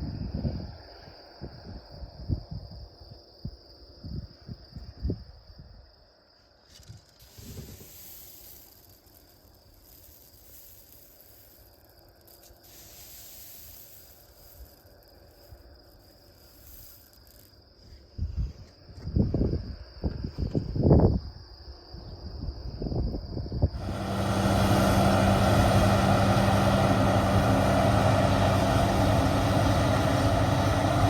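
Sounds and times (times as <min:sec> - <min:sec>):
insects chirring: 0:00.1 - 0:23.8
high hissing buzz: 0:07.1 - 0:17.6, 0:23.7 - 0:31.0.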